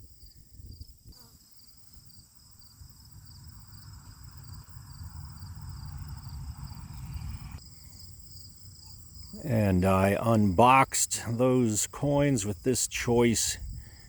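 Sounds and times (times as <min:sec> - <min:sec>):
insects chirping: 0:00.0 - 0:14.0
low rumble: 0:03.4 - 0:07.6.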